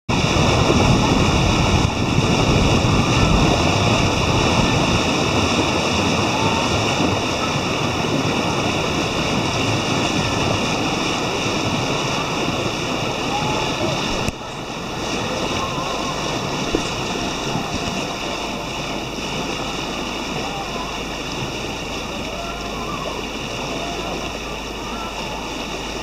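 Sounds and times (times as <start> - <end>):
wind rushing: 0.1 - 18.6
heavy low rumble: 0.1 - 26.0
sea water rushing: 0.1 - 26.0.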